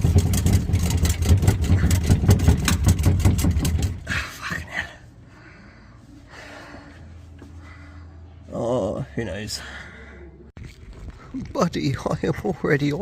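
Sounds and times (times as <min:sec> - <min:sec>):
exhaust pipe rattling and knocking: 0:00.0 - 0:04.4.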